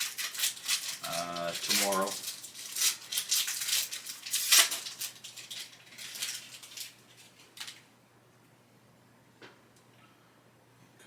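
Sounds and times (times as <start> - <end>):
foil wrapper crinkling: 0.0 - 7.9.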